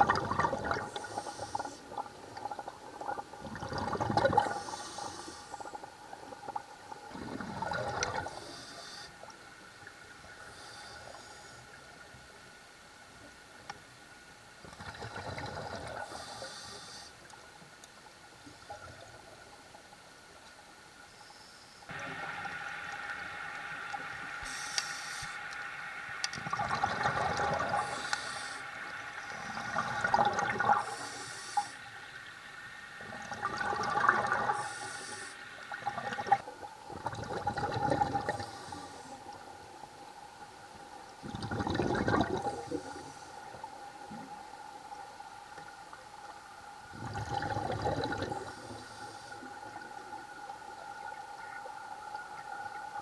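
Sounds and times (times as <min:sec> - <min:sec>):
exhaled bubbles gurgling: 0:00.0 - 0:08.6, 0:14.7 - 0:16.4, 0:26.4 - 0:31.7, 0:32.9 - 0:45.0, 0:46.7 - 0:53.0
regulator inhalation hiss: 0:00.8 - 0:02.0, 0:04.4 - 0:05.8, 0:08.3 - 0:09.3, 0:10.4 - 0:11.8, 0:16.0 - 0:17.3, 0:21.2 - 0:26.2, 0:27.6 - 0:29.8, 0:30.7 - 0:32.2, 0:34.4 - 0:35.8, 0:38.2 - 0:39.4, 0:42.4 - 0:43.8, 0:48.4 - 0:50.1.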